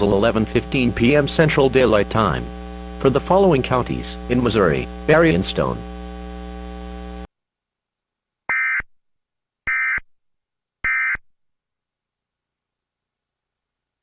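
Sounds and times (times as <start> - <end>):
steady hum: 0.0 - 7.3
digital tone squawks: 8.5 - 8.8, 9.7 - 10.0, 10.8 - 11.2.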